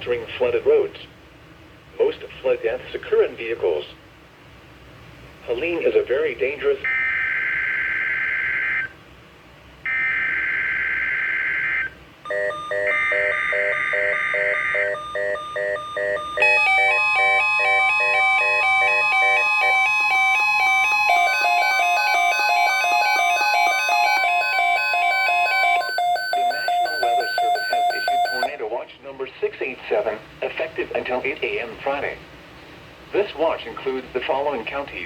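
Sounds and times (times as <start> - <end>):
steady warning tone: 9.9 - 28.6
rapid stepping electronic beeps: 12.7 - 28.5.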